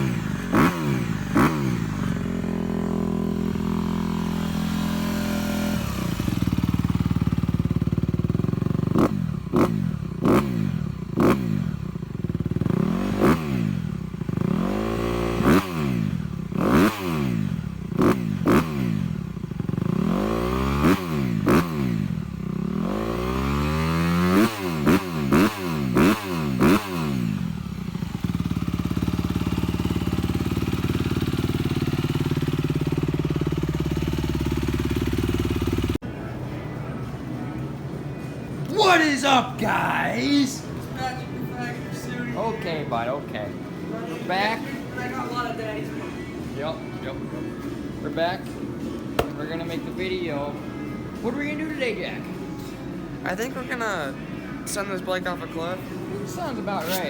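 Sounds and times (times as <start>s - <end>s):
dirt bike engine revving: 0.0s - 36.0s, 56.8s - 57.0s.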